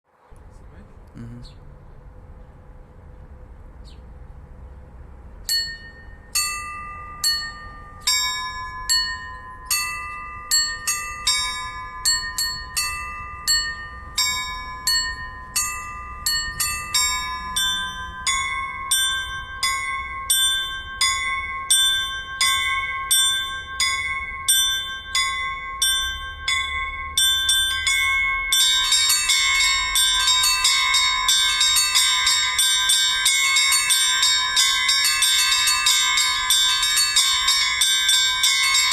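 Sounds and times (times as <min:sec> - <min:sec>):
church bells ringing: 0:05.5 - 0:38.9.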